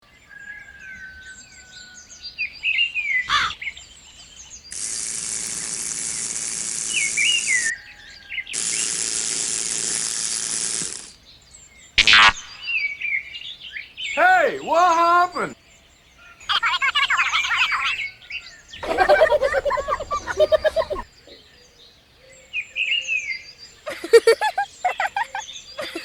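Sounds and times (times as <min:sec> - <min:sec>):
small birds chirping: 0:13.6 - 0:22.5.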